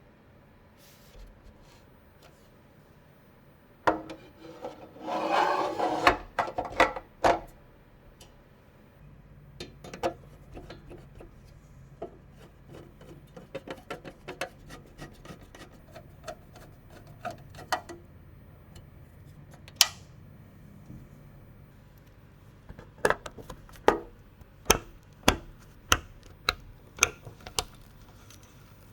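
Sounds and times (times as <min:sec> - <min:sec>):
scraping rub on hardware: 0:04.1 - 0:06.2, 0:12.0 - 0:17.9
small clicks and taps: 0:22.0 - 0:28.5.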